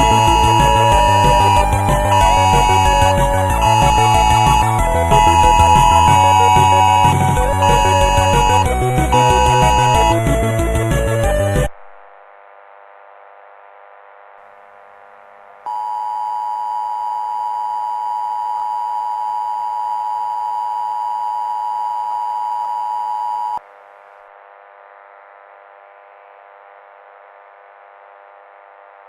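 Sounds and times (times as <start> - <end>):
loud steady electronic alert tone: 0.0 - 11.7, 15.7 - 23.6.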